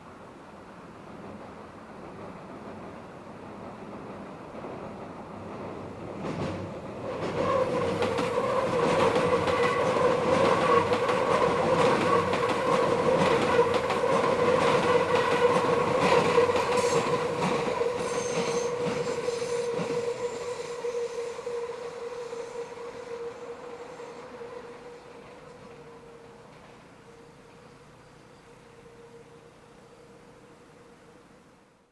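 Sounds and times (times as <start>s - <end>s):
train wheels rumbling on rails: 0.6s - 28.1s
train wheels squealing: 7.3s - 31.0s.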